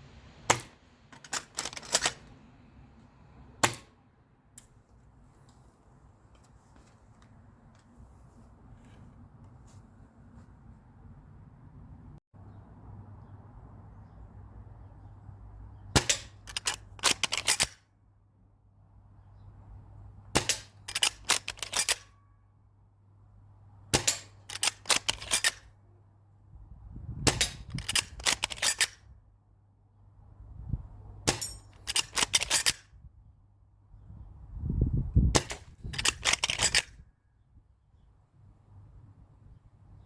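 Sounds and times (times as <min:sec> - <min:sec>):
airsoft rifle metallic clicks: 0:00.5 - 0:02.4, 0:16.0 - 0:17.8, 0:20.4 - 0:22.2, 0:24.0 - 0:25.7, 0:27.3 - 0:29.0, 0:31.3 - 0:32.9, 0:35.4 - 0:37.0.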